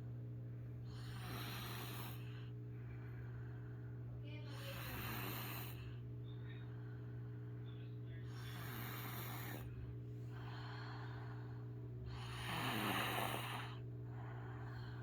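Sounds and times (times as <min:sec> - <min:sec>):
steady low hum: 0:00.0 - 0:15.0
person snoring: 0:00.9 - 0:02.4, 0:08.3 - 0:09.7, 0:12.1 - 0:13.8.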